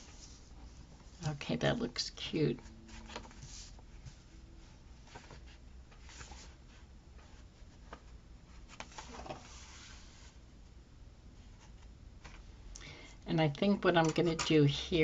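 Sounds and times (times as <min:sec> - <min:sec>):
paper rustling: 0:02.9 - 0:04.2, 0:05.0 - 0:10.3.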